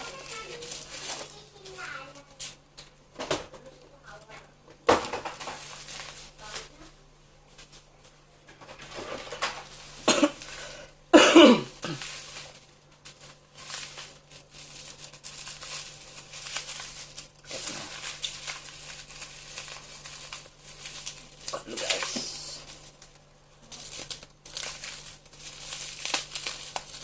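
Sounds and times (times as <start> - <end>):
parcel wrapping rustling: 0.0 - 2.8, 4.9 - 6.8, 11.6 - 27.0
cough-like voice sound: 10.1 - 10.4, 11.2 - 12.0.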